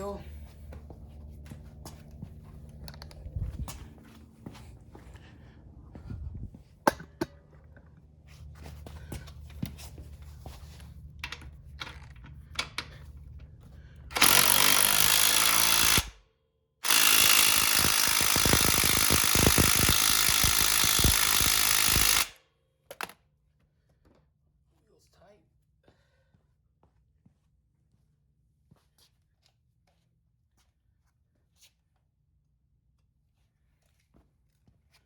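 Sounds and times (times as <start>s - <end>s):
tool clicks and knocks: 6.8s - 7.9s
impact wrench hammering: 14.1s - 16.2s, 16.8s - 22.4s.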